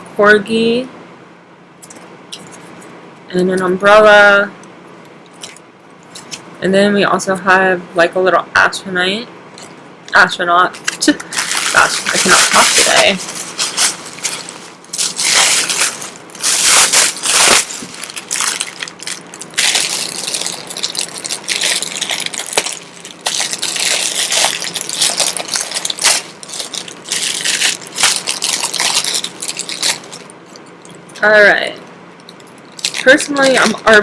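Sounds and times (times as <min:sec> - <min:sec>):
plastic packaging crinkling: 0:10.7 - 0:31.1, 0:32.2 - 0:34.0.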